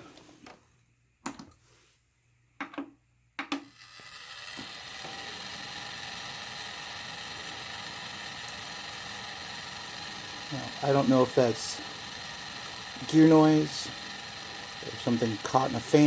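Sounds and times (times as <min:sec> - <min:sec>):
fan grinding noise: 0:03.7 - 0:16.0.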